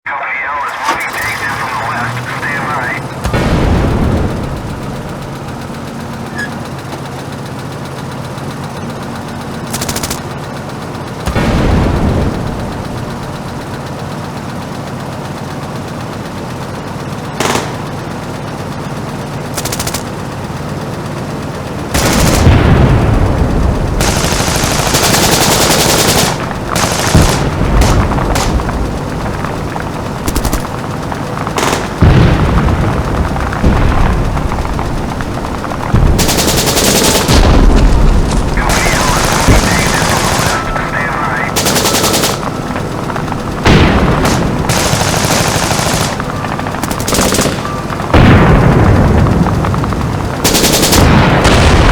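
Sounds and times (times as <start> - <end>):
sharp cracks: 0.1 - 8.2, 9.3 - 14.4, 17.4 - 18.2, 19.4 - 20.4, 21.9 - 51.9
rapid automatic gunfire: 0.2 - 51.9
heavy booms: 1.5 - 5.8, 11.3 - 13.5, 26.3 - 51.9
low rumble: 1.5 - 6.4, 22.0 - 51.9.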